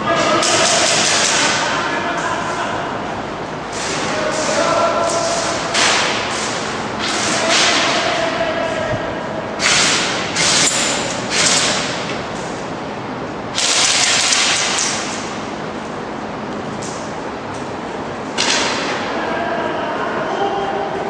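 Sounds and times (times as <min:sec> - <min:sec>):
airsoft guns firing: 0:09.6 - 0:11.9, 0:13.5 - 0:15.0.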